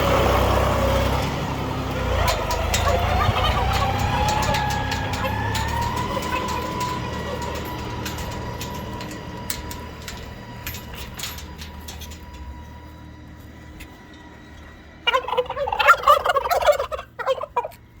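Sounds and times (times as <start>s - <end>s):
turkey gobbling: 1.9s - 8.5s, 15.0s - 17.8s.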